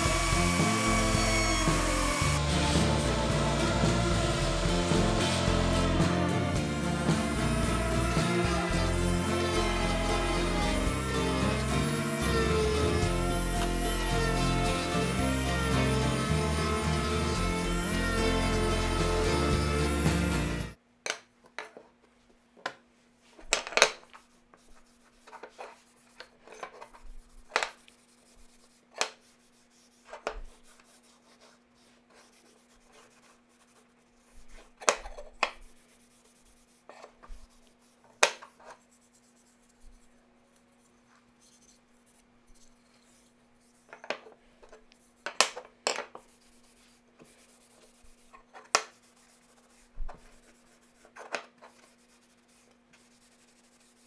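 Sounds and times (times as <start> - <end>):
rubbing and scraping on wood: 0.0 - 20.8.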